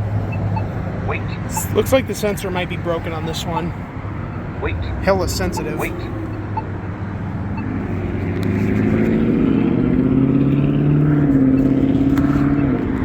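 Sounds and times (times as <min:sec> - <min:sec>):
vehicle engine accelerating: 0:05.6 - 0:13.0.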